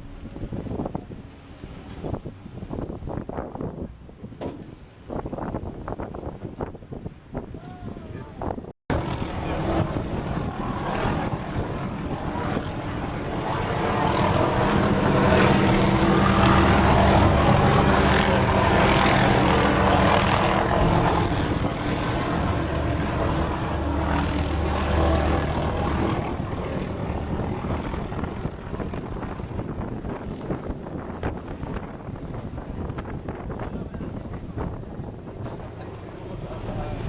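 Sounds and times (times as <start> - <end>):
boat engines running: 8.9 - 37.0.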